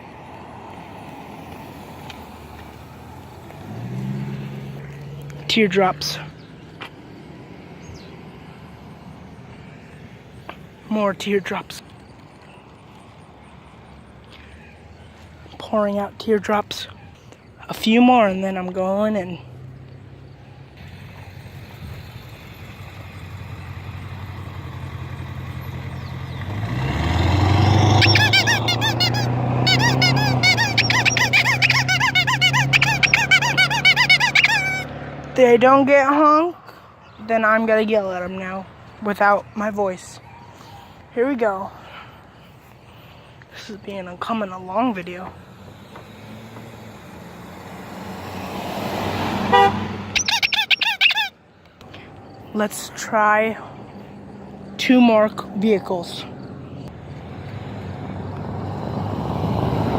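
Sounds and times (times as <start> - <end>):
car passing: 0.0 - 59.9
toy horn squeaking: 27.8 - 34.9, 49.5 - 51.4.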